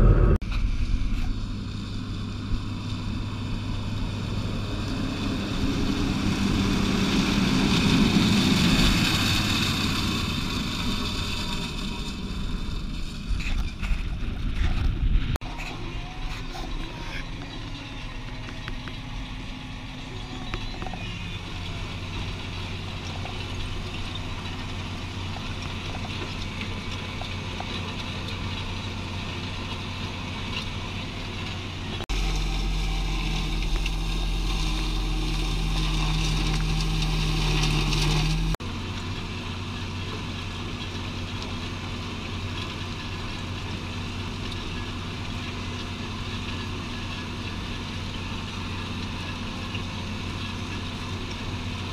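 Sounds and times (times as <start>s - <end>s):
deep engine drone with hiss: 0.0s - 11.5s, 31.2s - 51.9s
tractor engine running: 0.0s - 51.9s.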